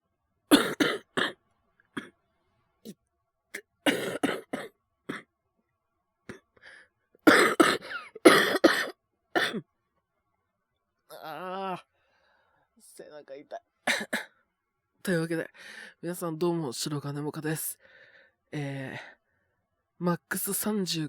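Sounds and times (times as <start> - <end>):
man clearing throat: 0.5 - 1.4, 3.9 - 5.2, 7.3 - 9.6, 13.9 - 14.3
man coughing: 0.5 - 1.4, 3.9 - 5.2, 7.3 - 9.6, 13.9 - 14.3.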